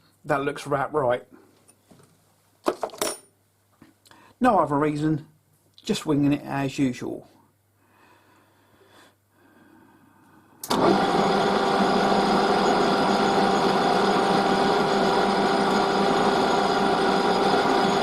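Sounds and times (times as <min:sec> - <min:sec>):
metal lathe motor hum and whine: 0:10.7 - 0:18.0.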